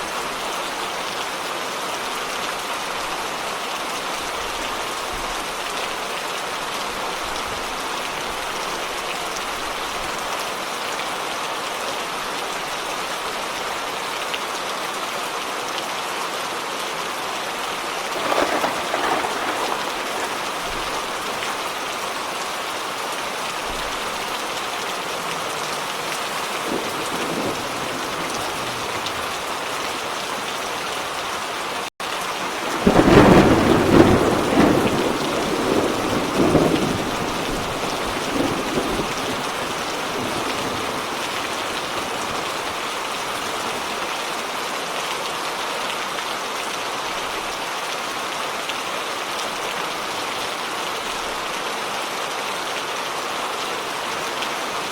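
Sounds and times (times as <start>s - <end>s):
steady rain falling: 0.0s - 54.9s
rolling thunder: 18.1s - 22.3s, 32.4s - 43.8s.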